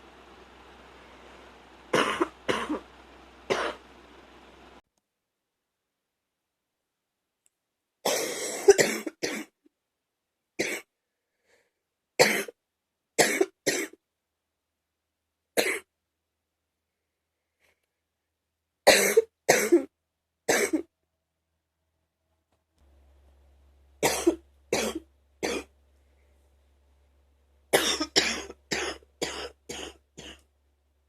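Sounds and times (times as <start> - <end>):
woman coughing: 8.1 - 9.6, 18.9 - 19.9, 24.0 - 25.7, 27.8 - 30.4.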